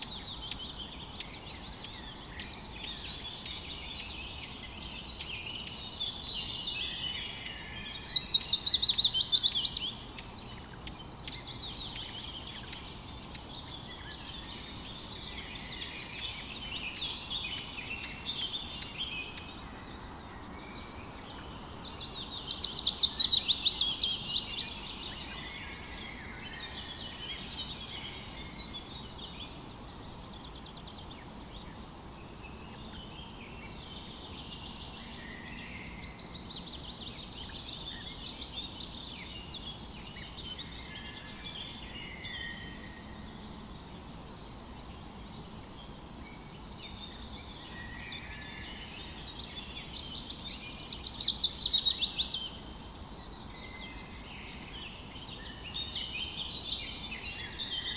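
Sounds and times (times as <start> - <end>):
faint steady hiss: 0.0 - 57.9
songbirds chirping and warbling: 0.0 - 57.9.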